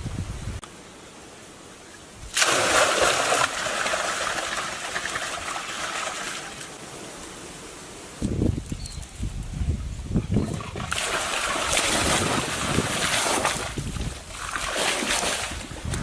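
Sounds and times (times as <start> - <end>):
water splashing and sloshing: 2.2 - 7.1, 10.4 - 16.0.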